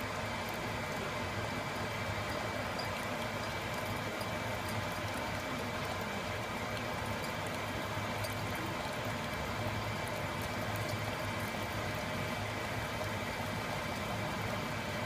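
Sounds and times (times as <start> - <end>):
coffee maker water hissing: 0.0 - 15.0.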